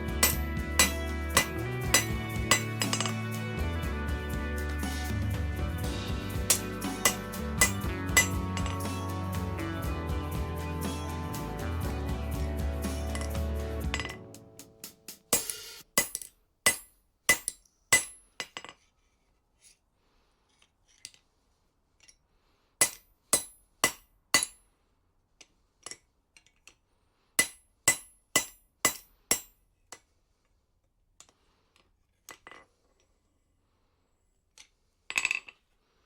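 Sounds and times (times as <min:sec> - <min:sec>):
hammer striking steel on anvil: 0:00.0 - 0:03.4, 0:06.4 - 0:09.1, 0:15.3 - 0:18.2, 0:22.8 - 0:24.6, 0:27.4 - 0:29.5.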